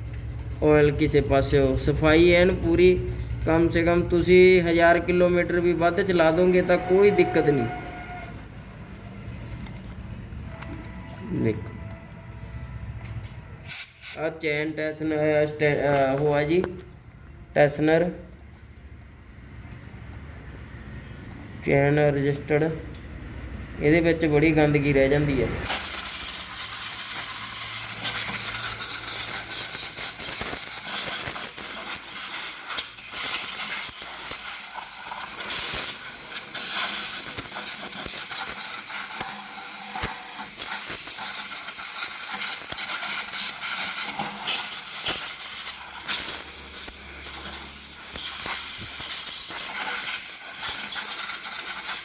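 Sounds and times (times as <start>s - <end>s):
high-pressure water jet spraying: 25.6s - 52.0s.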